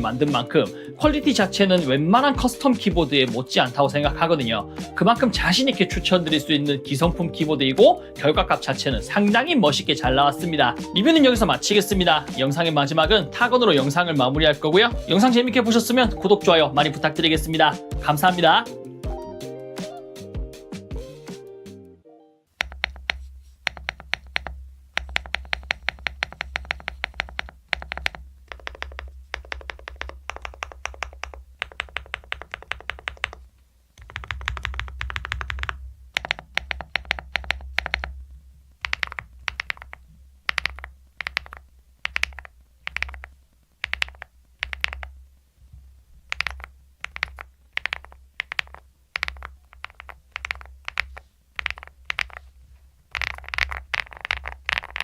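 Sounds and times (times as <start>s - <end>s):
mechanical keyboard typing: 22.6s - 33.4s, 34.0s - 38.2s, 38.8s - 45.1s, 46.3s - 52.5s, 53.1s - 55.0s.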